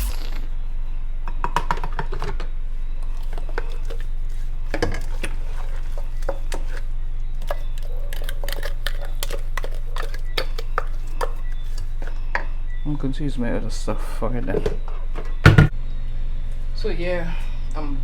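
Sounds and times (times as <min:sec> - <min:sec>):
steady low hum: 0:00.0 - 0:01.4.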